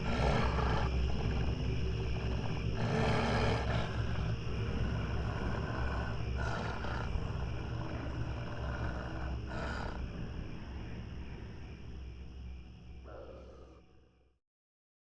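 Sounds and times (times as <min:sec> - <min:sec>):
growl-like animal swells: 0:00.0 - 0:10.1
low rumbling drone: 0:00.0 - 0:14.2.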